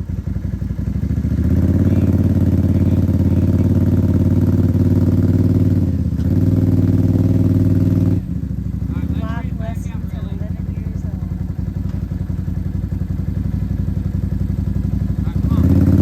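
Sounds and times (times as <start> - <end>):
off-road vehicle engine revving: 0.0 - 16.0.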